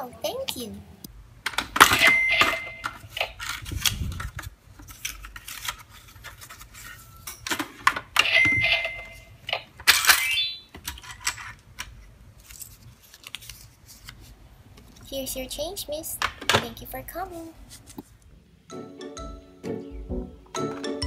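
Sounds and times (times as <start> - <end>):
play coins clattering: 1.8 - 3.0, 6.8 - 9.3, 9.9 - 11.6.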